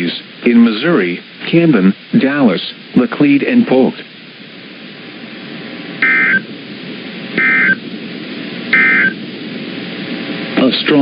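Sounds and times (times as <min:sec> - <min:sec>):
radio noise hiss: 0:00.0 - 0:11.0
warbling digital data tones: 0:06.0 - 0:06.5, 0:07.4 - 0:07.8, 0:08.7 - 0:09.2.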